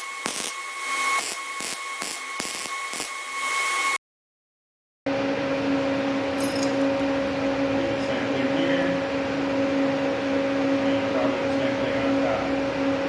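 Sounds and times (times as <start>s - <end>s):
machine humming: 5.1s - 13.0s.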